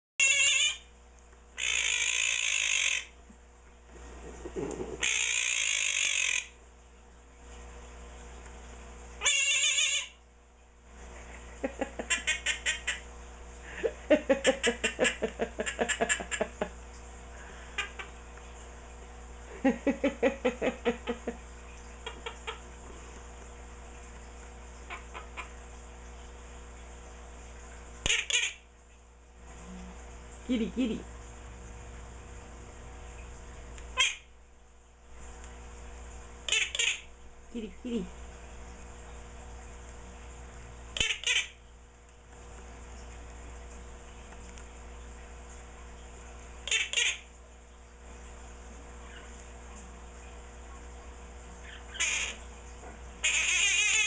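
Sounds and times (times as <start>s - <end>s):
parrot calling harshly: 0.2s - 0.9s, 1.6s - 3.2s, 5.0s - 6.6s, 9.2s - 10.2s, 12.0s - 13.0s, 28.0s - 28.6s, 34.0s - 34.3s, 36.5s - 37.1s, 41.0s - 41.6s, 46.6s - 47.3s, 51.7s - 52.4s, 53.2s - 54.0s.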